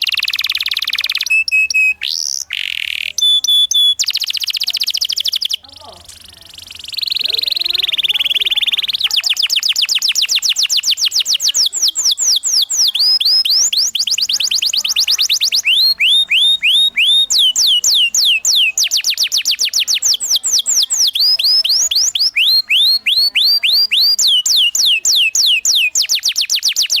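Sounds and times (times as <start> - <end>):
canary singing: 0.0 - 27.0.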